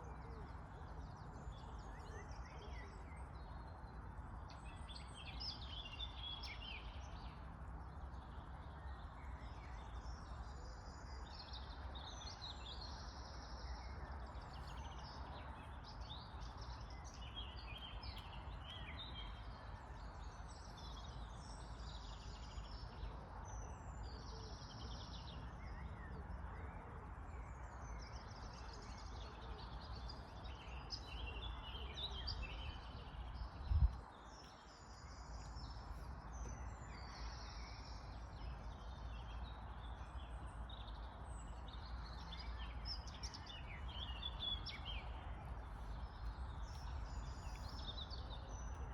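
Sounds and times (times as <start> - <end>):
birds chirping: 28.1 - 48.9.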